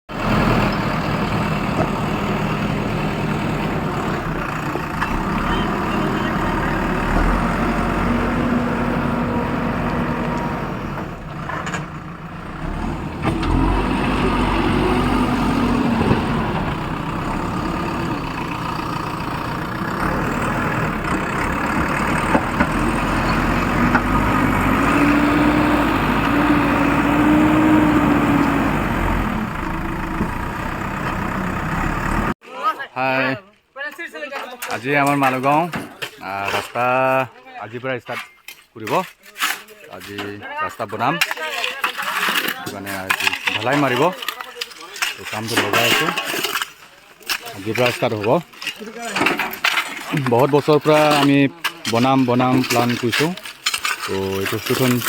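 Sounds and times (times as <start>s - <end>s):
heavy vehicle engine running: 0.1s - 32.4s.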